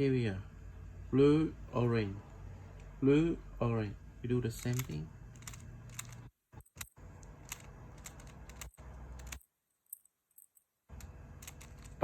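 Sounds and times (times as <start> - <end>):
plastic puzzle cube clicking: 4.6 - 12.0.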